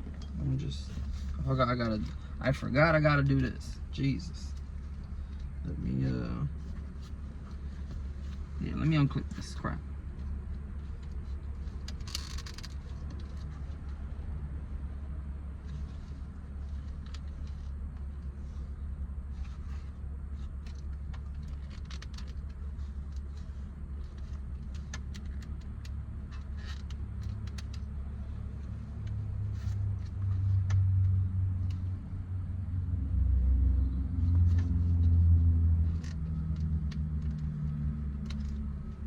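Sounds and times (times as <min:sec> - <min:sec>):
low vehicle rumble: 0:00.0 - 0:39.0.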